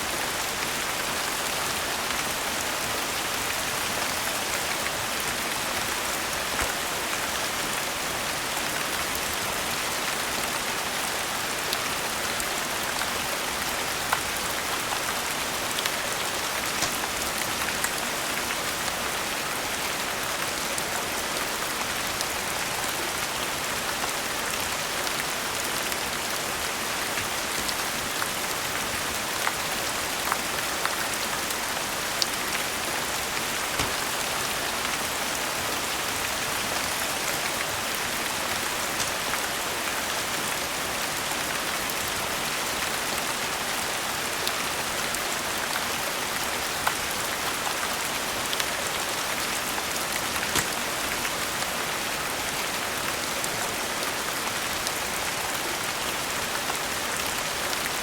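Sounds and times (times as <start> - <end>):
steady rain falling: 0.0 - 58.0
fireplace crackling pops: 16.8 - 17.2, 33.7 - 34.6.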